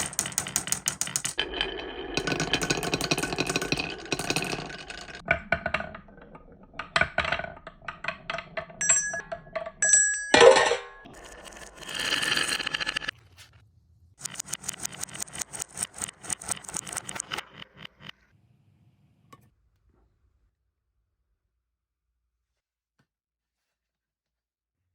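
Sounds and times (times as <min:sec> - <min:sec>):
marble clacking on wood: 0:00.0 - 0:13.1, 0:14.2 - 0:18.2
marble rolling: 0:00.0 - 0:13.2, 0:14.2 - 0:18.3
metallic clang: 0:08.8 - 0:11.1.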